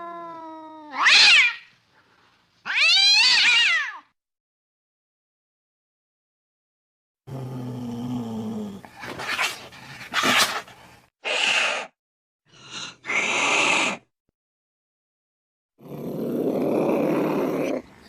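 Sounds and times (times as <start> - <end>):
cat hissing: 9.0 - 12.0, 12.6 - 14.1
cat growling: 15.8 - 18.0.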